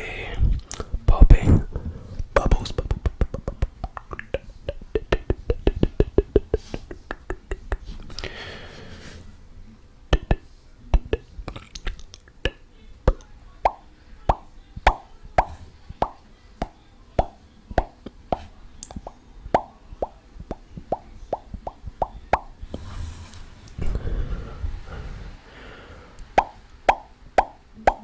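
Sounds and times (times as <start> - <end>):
hollow tongue pops: 2.4 - 7.8, 10.1 - 10.4, 11.0 - 22.6, 26.4 - 28.0.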